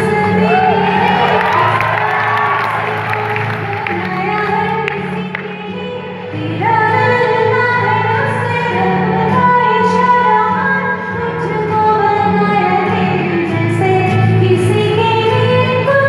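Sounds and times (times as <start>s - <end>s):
woman singing: 0.0s - 16.0s
musical accompaniment: 0.3s - 7.9s.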